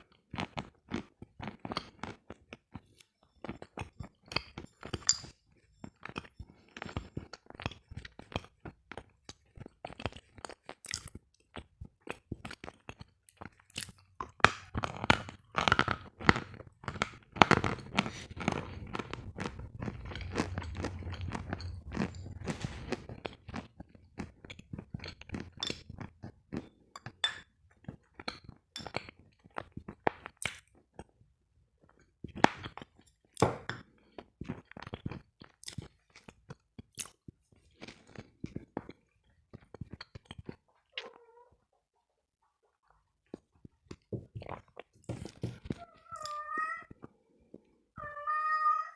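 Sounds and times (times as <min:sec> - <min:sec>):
crunching chalk bites: 0:14.4 - 0:23.2.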